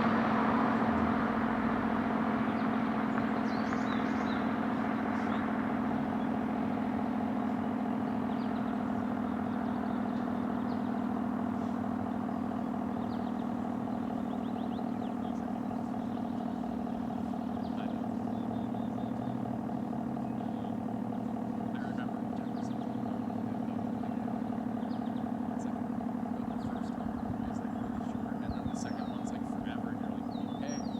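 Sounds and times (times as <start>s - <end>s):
warning siren steady tone: 0.0s - 19.4s
small birds chirping: 0.0s - 30.9s.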